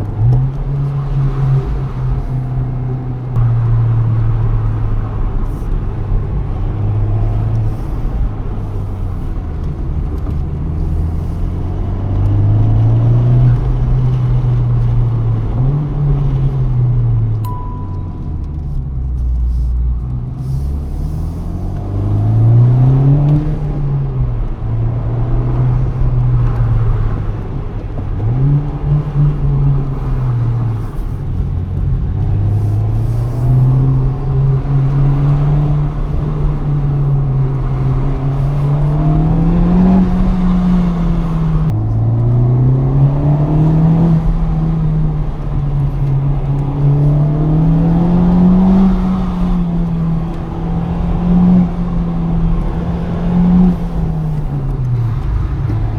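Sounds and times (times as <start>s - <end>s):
car engine revving: 0.0s - 55.9s
road and tyre rumble: 0.0s - 55.9s.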